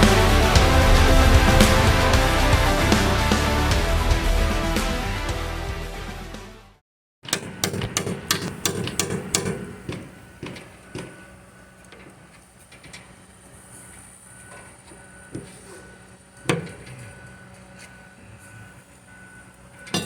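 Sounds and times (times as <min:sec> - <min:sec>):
background music: 0:00.0 - 0:06.8.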